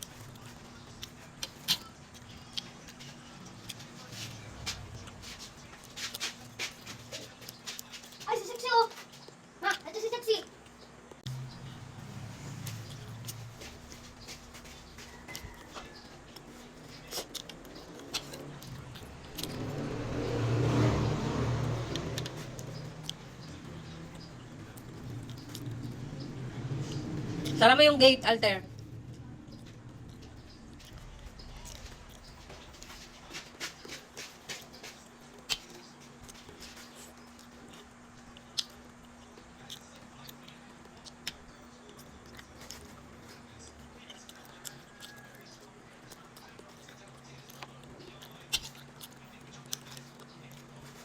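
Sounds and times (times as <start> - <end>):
person chewing: 0.0 - 8.2, 10.6 - 27.6, 28.8 - 51.0
vehicle engine running: 11.3 - 38.3.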